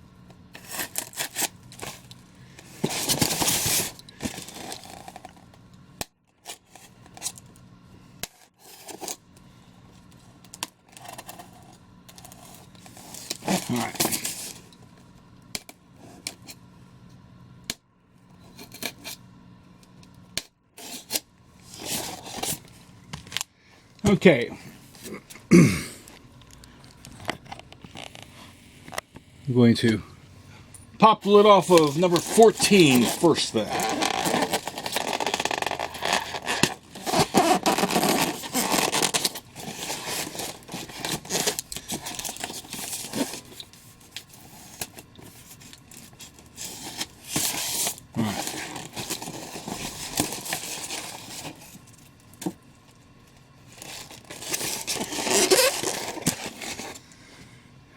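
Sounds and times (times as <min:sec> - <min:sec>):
steady low hum: 0:00.0 - 0:57.9
packaging scraping and rustling: 0:00.5 - 0:05.4, 0:08.4 - 0:09.2, 0:10.8 - 0:14.7, 0:20.8 - 0:23.4, 0:27.0 - 0:29.0, 0:31.2 - 0:52.6, 0:53.6 - 0:57.1
packaging clicks: 0:31.6 - 0:43.7.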